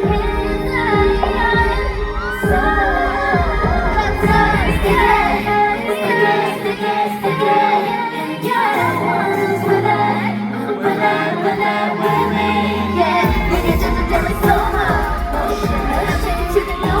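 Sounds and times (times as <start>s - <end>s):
women singing over pop track: 0.0s - 17.0s.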